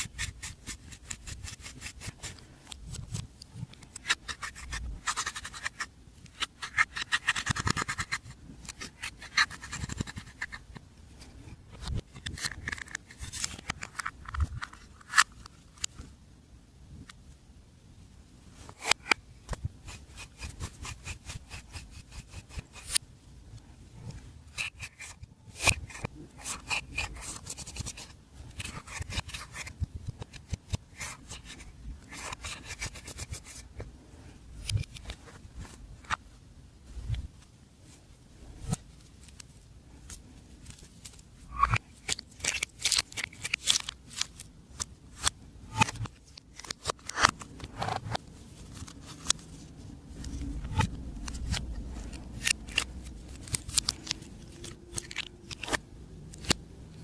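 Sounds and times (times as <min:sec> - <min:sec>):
slime scraping and rubbing: 0:00.0 - 0:03.2, 0:03.8 - 0:10.8, 0:18.6 - 0:23.0, 0:24.5 - 0:33.8, 0:41.5 - 0:55.8.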